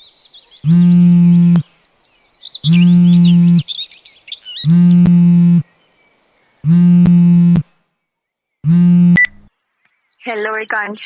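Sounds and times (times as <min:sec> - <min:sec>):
mobile phone vibration buzz: 0:00.6 - 0:01.7, 0:02.6 - 0:03.6, 0:04.6 - 0:05.6, 0:06.6 - 0:07.7, 0:08.6 - 0:09.5
birds chirping: 0:00.6 - 0:05.7, 0:06.6 - 0:07.6, 0:08.6 - 0:09.5.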